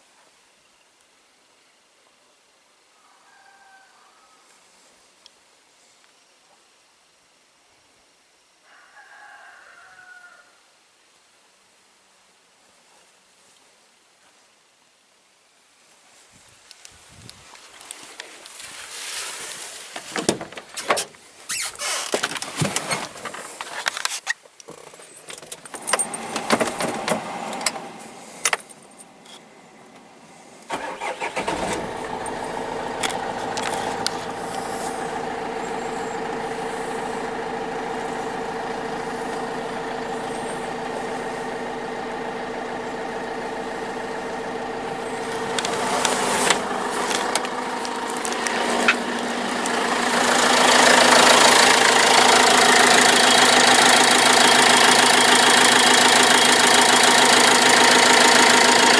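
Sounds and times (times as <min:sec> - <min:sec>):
handling clicks and clatter: 0:19.9 - 0:30.0, 0:31.5 - 0:41.8, 0:42.8 - 0:58.9
diesel engine starting and idling: 0:25.5 - 0:58.9.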